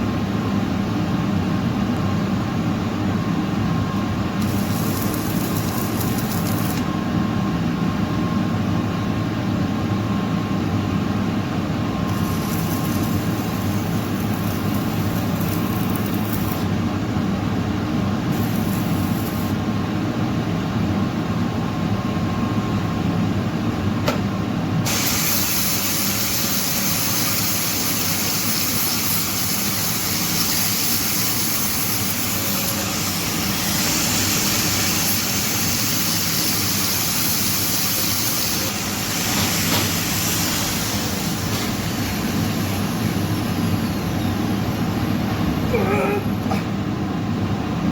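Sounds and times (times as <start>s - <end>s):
arc welding hum with hiss: 0.0s - 47.9s
harsh welding hiss: 4.4s - 6.9s, 12.1s - 16.7s, 18.3s - 19.6s, 24.8s - 45.5s.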